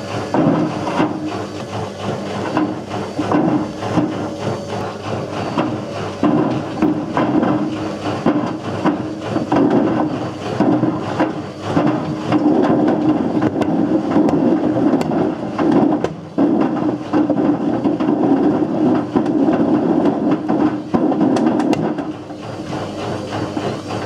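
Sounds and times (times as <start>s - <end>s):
washing machine drum rumbling: 0.0s - 24.0s
brick knocking inside drum: 8.3s - 22.1s.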